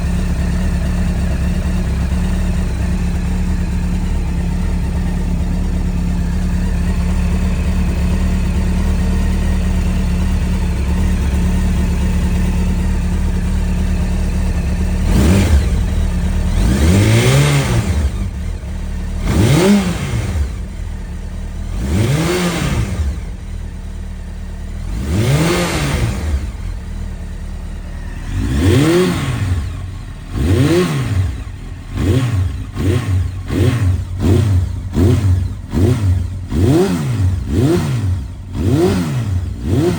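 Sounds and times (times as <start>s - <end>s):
motorcycle engine idling: 0.0s - 39.9s
engine throttle blips: 10.4s - 23.6s, 24.8s - 39.9s.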